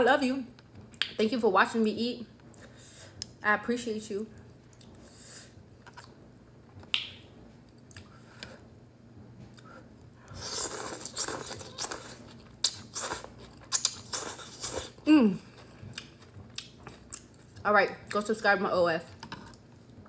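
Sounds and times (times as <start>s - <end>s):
chewing noodles: 10.3s - 17.6s.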